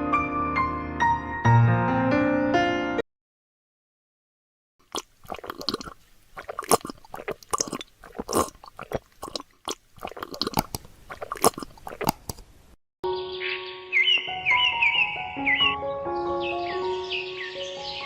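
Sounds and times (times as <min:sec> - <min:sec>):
crunching and clicking of craft materials: 0:04.9 - 0:12.5.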